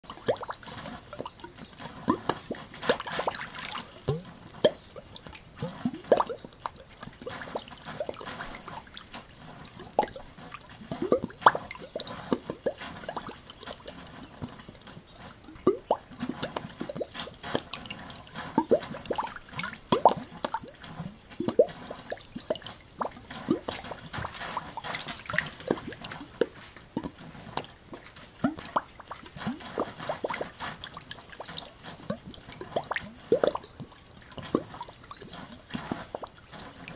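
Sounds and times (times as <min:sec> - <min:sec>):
water gushing from a pipe: 0:00.0 - 0:36.9.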